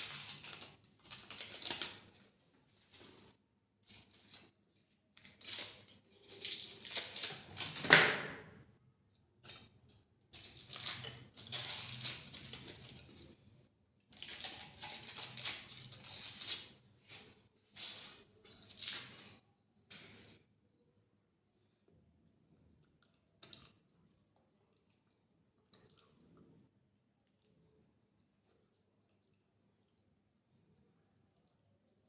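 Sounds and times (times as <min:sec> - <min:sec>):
chewing food: 0:22.3 - 0:32.0.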